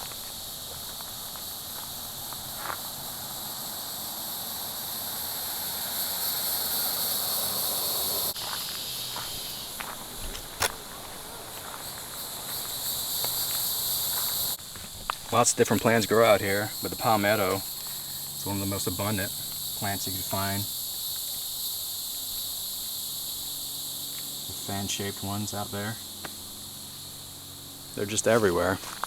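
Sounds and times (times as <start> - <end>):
insects shrilling: 0.0 - 29.0.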